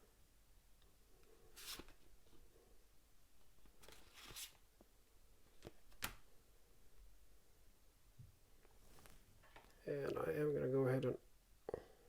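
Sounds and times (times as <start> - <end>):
cards rustling and tapping: 3.6 - 4.6.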